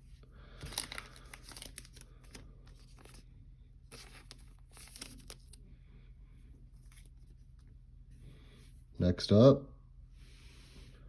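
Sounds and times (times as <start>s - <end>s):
trading cards rustling: 0.6s - 3.2s, 3.9s - 5.6s.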